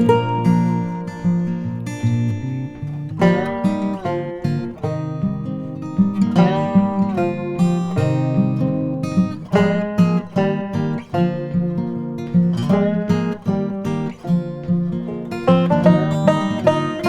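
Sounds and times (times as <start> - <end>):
strummed acoustic guitar: 0.0 - 17.0.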